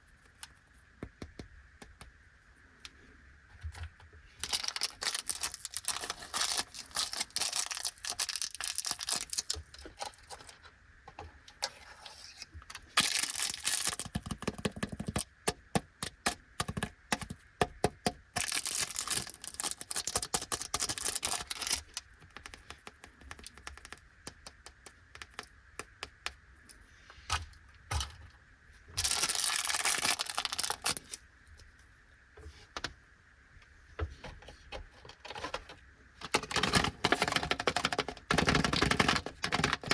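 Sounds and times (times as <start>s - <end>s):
plastic wrappers crinkling: 4.4s - 10.3s, 13.0s - 15.2s, 18.4s - 22.5s, 29.0s - 31.2s.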